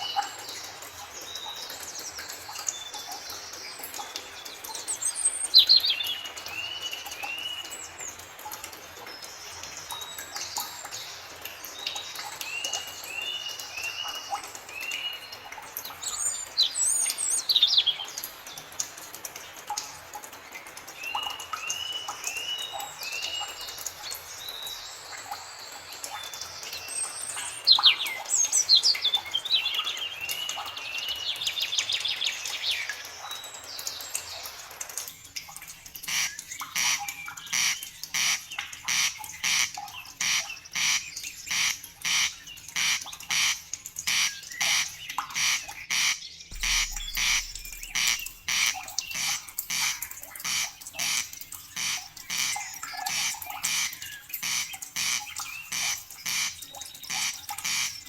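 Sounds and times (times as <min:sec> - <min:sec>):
forest birds singing: 0:16.0 - 0:18.2, 0:21.0 - 0:34.4, 0:44.1 - 0:51.2.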